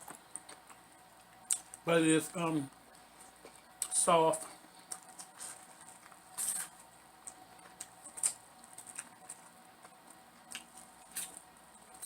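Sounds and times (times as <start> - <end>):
chewing corn on the cob: 4.8 - 12.0.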